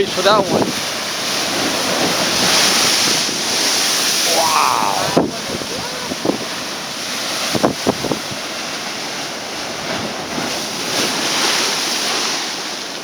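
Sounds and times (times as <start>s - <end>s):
ocean waves crashing on rocks: 0.0s - 13.0s
wind buffeting microphone: 0.2s - 8.6s.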